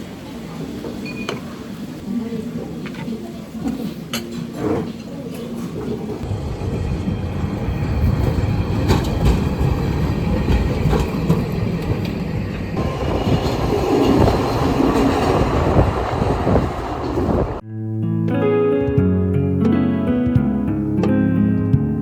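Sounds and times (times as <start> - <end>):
tram running on rails: 0.0 - 3.6, 4.9 - 17.6.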